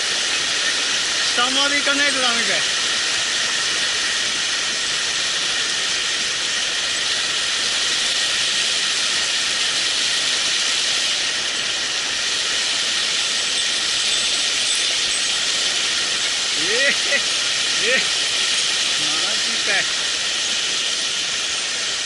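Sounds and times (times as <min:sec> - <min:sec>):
stream rushing over rocks: 0:00.0 - 0:22.0.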